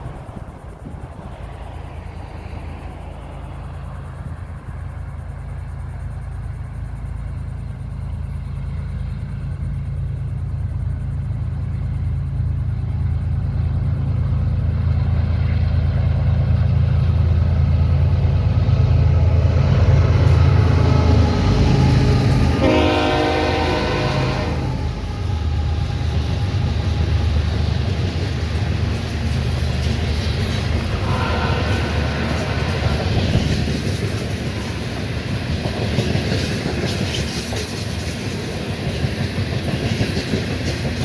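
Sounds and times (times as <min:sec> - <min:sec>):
diesel locomotive engine drone: 0:00.0 - 0:41.0
train horn: 0:20.6 - 0:26.7, 0:30.8 - 0:33.4.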